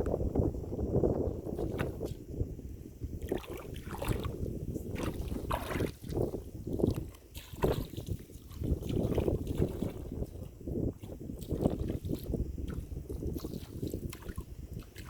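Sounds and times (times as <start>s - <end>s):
wind rumbling on microphone: 0.0s - 15.0s
river water splashing: 3.2s - 15.0s.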